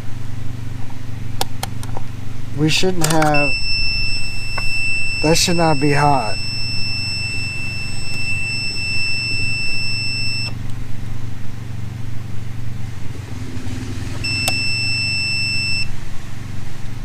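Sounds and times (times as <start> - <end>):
steady low hum: 0.0 - 17.0
click: 3.0 - 3.4
high warning buzzer beep: 3.2 - 10.6, 14.2 - 15.9.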